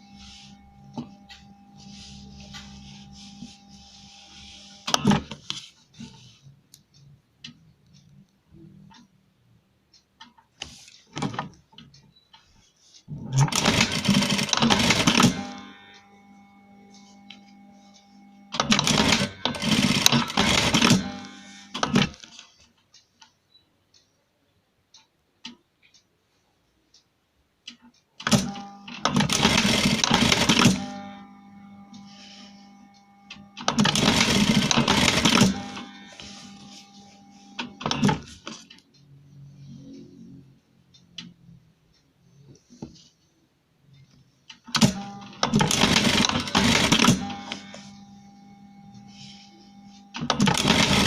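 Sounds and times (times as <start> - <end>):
sewing machine stitching: 13.3 - 15.6, 18.6 - 22.2, 28.2 - 30.9, 33.6 - 36.2, 44.7 - 47.8, 50.2 - 51.0
motor faint steady hum: 15.4 - 18.6, 30.8 - 34.7, 35.5 - 39.8, 47.2 - 50.2.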